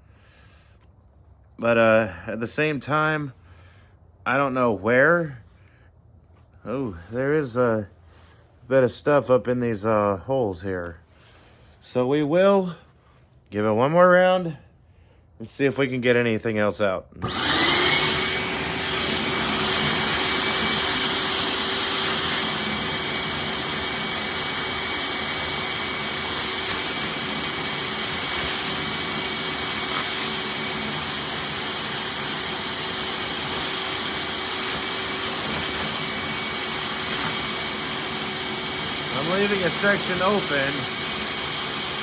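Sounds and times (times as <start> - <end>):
shop vacuum running: 17.2 - 42.0.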